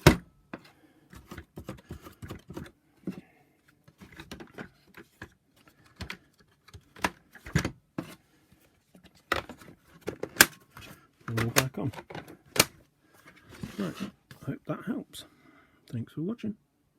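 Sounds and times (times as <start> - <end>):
plastic vacuum parts clicking: 9.1 - 12.8.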